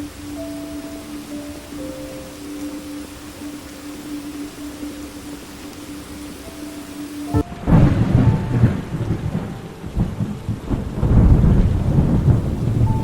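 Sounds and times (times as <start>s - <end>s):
steady rain: 0.0s - 13.0s
low roll of thunder: 7.4s - 13.0s.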